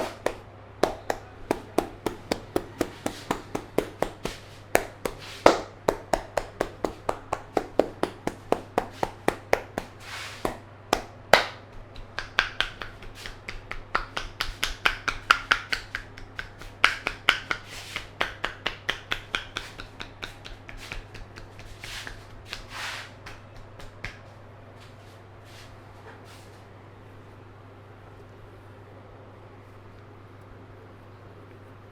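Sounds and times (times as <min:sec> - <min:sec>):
hands striking head: 0:00.0 - 0:24.4.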